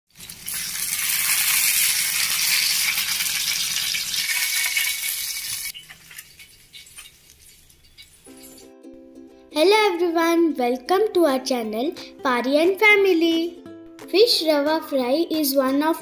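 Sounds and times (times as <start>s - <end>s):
hot oil sizzling in a pan: 0.1s - 8.7s.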